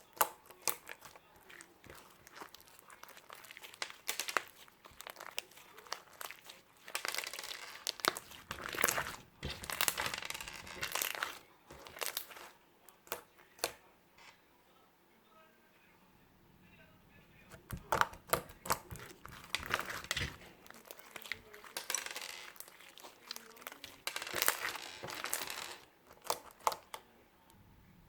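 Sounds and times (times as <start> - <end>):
crinkling and rustling: 0.0 - 14.4, 17.5 - 27.1.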